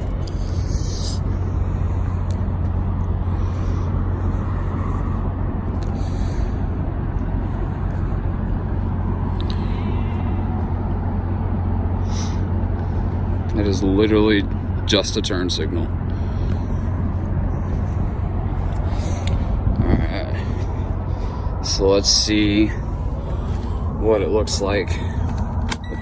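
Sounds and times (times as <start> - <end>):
engine idling: 0.0 - 26.0.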